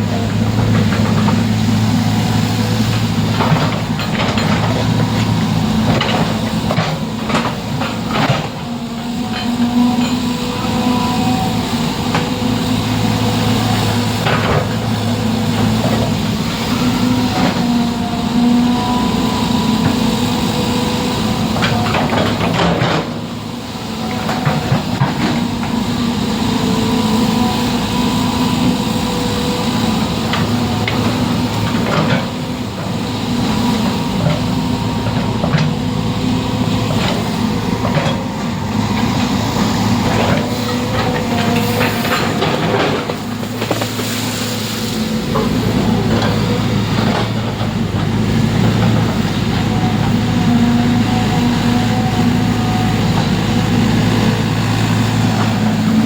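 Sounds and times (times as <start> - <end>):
engine running steadily: 0.0 - 56.0
knocks and clanks: 2.9 - 8.7.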